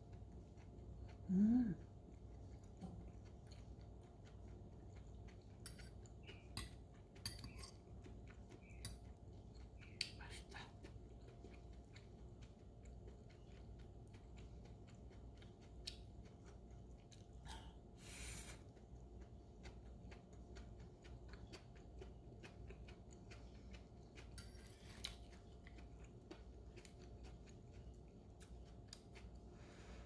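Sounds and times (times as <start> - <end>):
low steady hum: 0.0 - 30.0.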